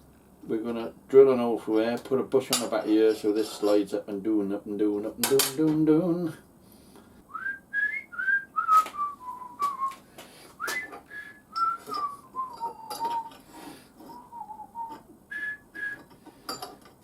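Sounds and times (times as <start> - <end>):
man whistling a tune: 7.3 - 10.0, 10.6 - 13.4, 14.1 - 16.1.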